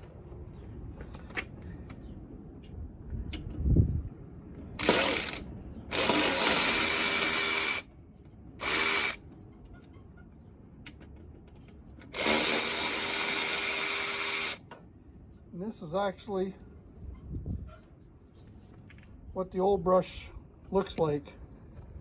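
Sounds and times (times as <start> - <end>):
power drill running: 4.8 - 7.8, 8.6 - 9.2, 12.1 - 14.6.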